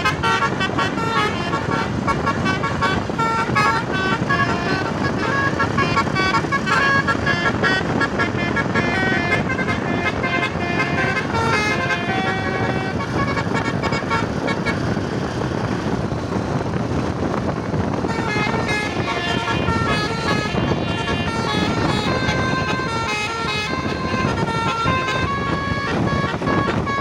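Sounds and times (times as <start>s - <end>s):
multi-tone horn playing a melody: 0.0s - 15.7s, 17.9s - 27.0s
road noise: 0.0s - 27.0s.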